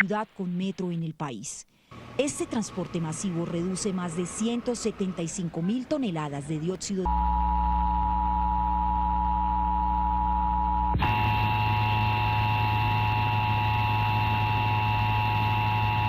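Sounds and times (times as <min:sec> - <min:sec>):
high steady whine: 0:07.1 - 0:16.0.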